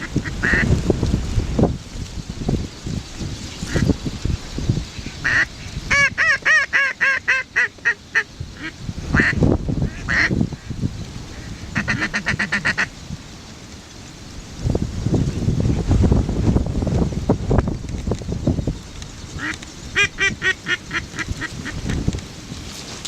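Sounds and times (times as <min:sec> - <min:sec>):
duck quacking: 0:00.0 - 0:00.7, 0:05.2 - 0:10.7, 0:11.3 - 0:12.9, 0:19.4 - 0:22.0
wind rumble on microphone: 0:00.0 - 0:23.0.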